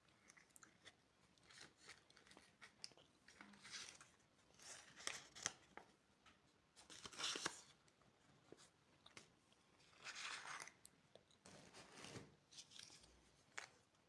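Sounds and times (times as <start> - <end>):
candy wrapper crinkling: 0.1 - 5.8.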